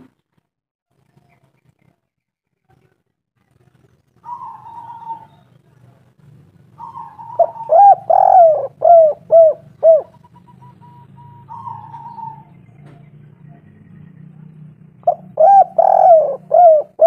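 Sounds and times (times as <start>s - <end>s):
dove cooing: 4.2s - 5.4s, 6.7s - 12.7s, 15.0s - 17.0s
fainter higher dove calls: 4.2s - 5.4s, 6.8s - 12.5s, 15.1s - 17.0s.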